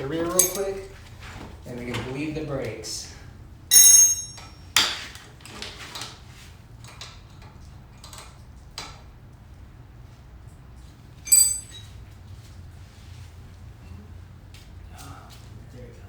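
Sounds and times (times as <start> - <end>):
metal tools clattering on workbench: 0.3 - 0.9, 3.7 - 5.0, 11.3 - 12.0
ringing metal clink: 0.3 - 0.9, 3.7 - 4.6, 11.3 - 11.9.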